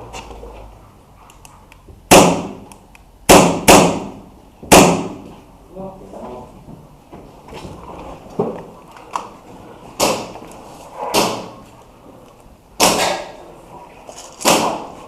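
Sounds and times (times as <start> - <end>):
airsoft gun shots: 2.1 - 2.7, 3.3 - 5.2, 11.1 - 11.5, 12.8 - 13.4, 14.4 - 15.0.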